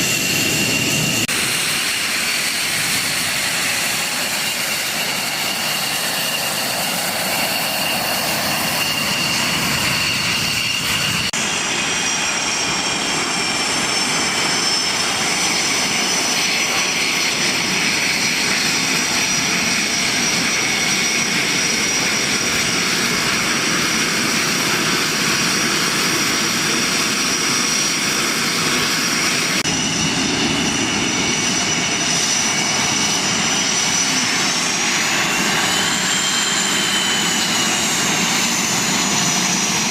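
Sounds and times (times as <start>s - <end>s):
aircraft engines roaring overhead: 0.0s - 39.9s.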